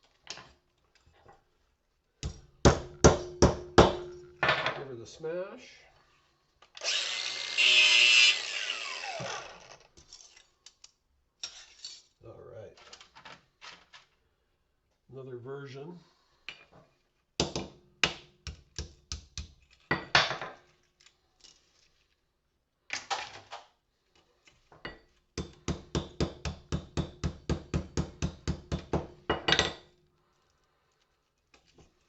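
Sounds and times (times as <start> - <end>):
hammer smashing porcelain: 25.4 - 29.9.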